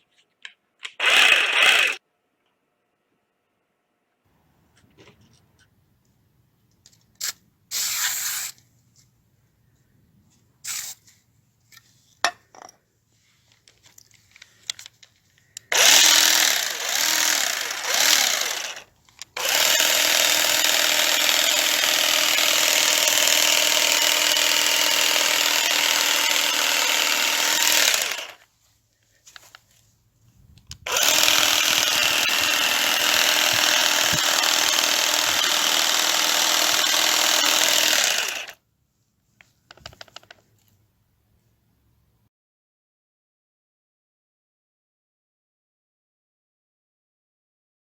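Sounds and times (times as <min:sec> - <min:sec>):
grass shear motor and blades running: 0:01.0 - 0:02.0, 0:15.7 - 0:28.4, 0:30.9 - 0:38.6.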